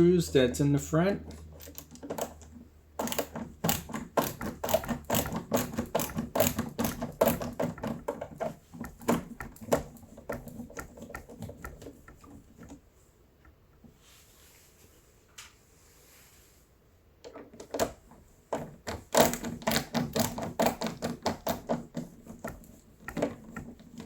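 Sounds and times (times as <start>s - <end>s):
screwdriver clicking: 1.3s - 8.0s.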